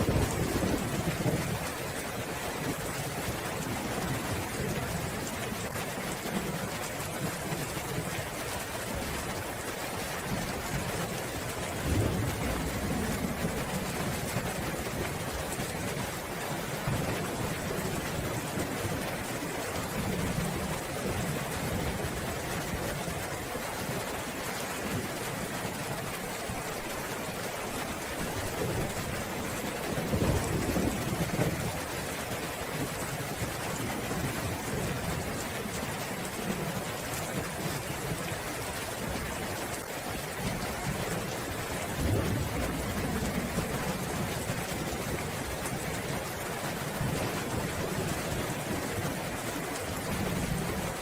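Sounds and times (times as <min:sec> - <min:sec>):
rolling thunder: 0:00.0 - 0:01.8, 0:11.7 - 0:15.3
heavy rain: 0:00.0 - 0:51.0.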